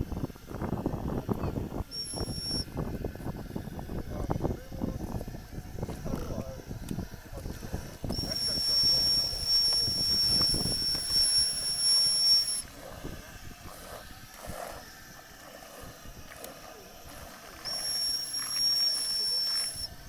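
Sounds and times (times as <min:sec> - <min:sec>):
high-pitched steam whistle: 0:01.9 - 0:02.7, 0:08.1 - 0:12.7, 0:17.6 - 0:20.0
steam hissing: 0:08.1 - 0:14.9, 0:17.3 - 0:19.9.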